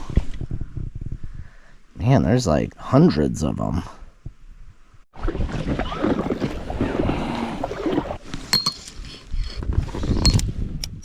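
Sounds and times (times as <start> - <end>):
wind on microphone: 0.0 - 2.1, 4.0 - 11.0
water sloshing and splashing: 5.1 - 9.0.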